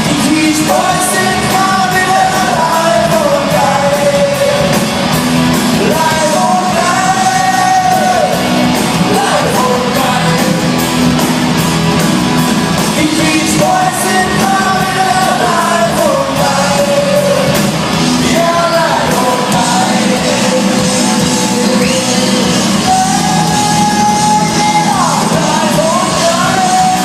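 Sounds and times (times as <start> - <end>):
live band playing: 0.0 - 27.0
person singing long notes: 18.2 - 27.0.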